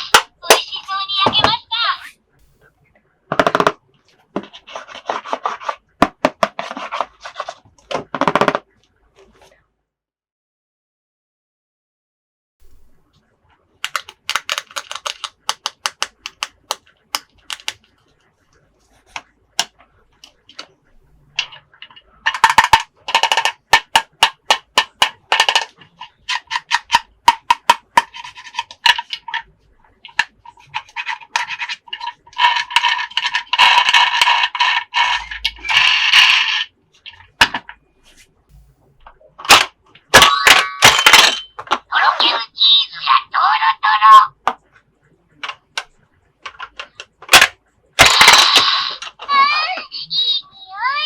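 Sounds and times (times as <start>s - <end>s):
plastic toy pieces clicking: 13.8s - 17.8s, 22.3s - 29.4s, 30.1s - 36.7s, 46.5s - 49.3s.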